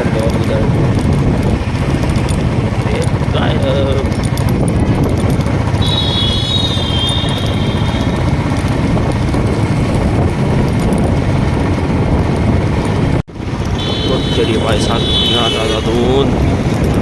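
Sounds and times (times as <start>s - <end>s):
motorcycle engine: 0.0s - 17.0s
road noise: 0.0s - 17.0s
wind rumble on microphone: 0.0s - 17.0s
high wavering tone: 5.8s - 8.4s.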